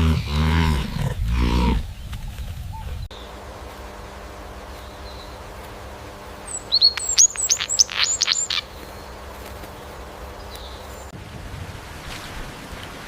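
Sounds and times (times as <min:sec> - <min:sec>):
bird singing high notes: 0:06.4 - 0:09.1.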